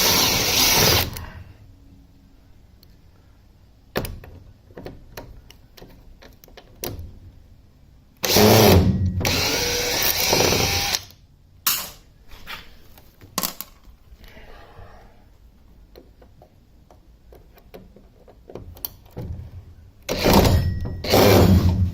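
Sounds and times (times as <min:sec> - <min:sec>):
power drill driving screws: 0:00.0 - 0:01.2, 0:08.2 - 0:11.1, 0:20.1 - 0:21.8
tools clicking and knocking: 0:15.9 - 0:19.4.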